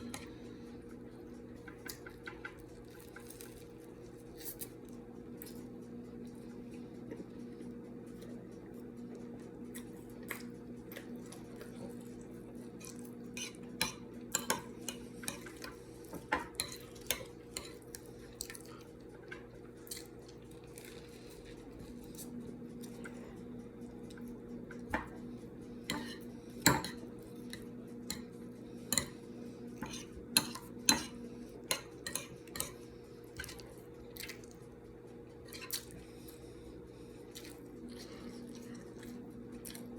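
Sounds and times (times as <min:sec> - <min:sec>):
steady low hum: 0:00.0 - 0:39.9
cutlery clinking on a plate: 0:25.9 - 0:27.0.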